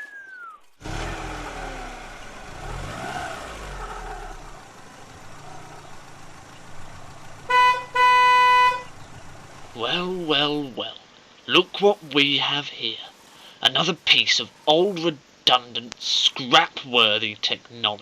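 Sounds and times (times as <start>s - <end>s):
vehicle engine running: 0.8s - 10.8s
vehicle horn honking: 7.4s - 9.0s.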